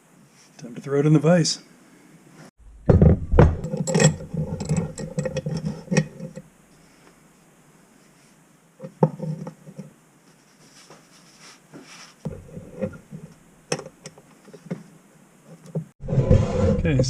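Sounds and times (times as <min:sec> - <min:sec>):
knocks and clunks on workbench: 0:02.9 - 0:03.9
rubbing and scraping: 0:03.6 - 0:06.4, 0:08.1 - 0:13.4, 0:14.4 - 0:17.0.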